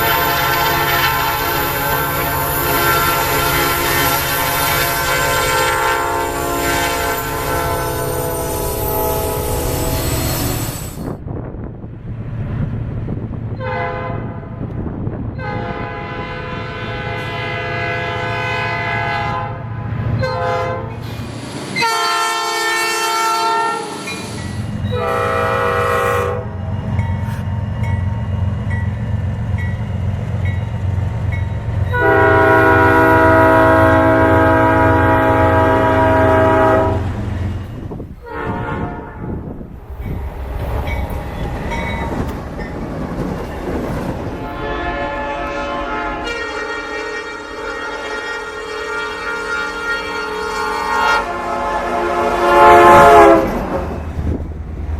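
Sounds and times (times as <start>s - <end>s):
locomotive horn blasts: 0.0s - 10.7s, 13.6s - 14.6s, 15.4s - 21.0s, 21.8s - 24.1s, 24.9s - 26.6s, 31.9s - 37.3s, 38.2s - 39.4s, 44.4s - 54.4s
train rumbling past: 0.0s - 54.9s.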